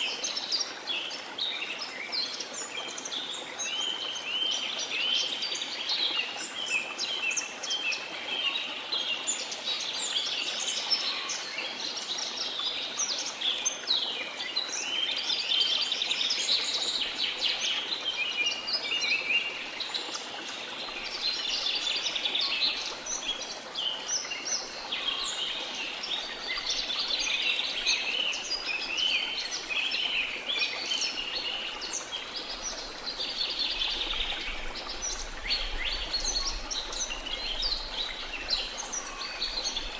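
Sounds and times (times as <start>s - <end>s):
tropical birds chirping and calling: 15.4s - 39.9s.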